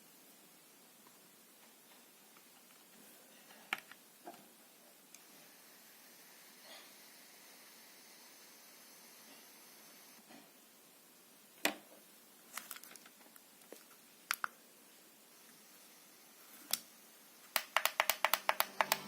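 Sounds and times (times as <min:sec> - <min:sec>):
faint steady hiss: 0:00.0 - 0:19.0
sharp clicks and taps: 0:17.5 - 0:19.0.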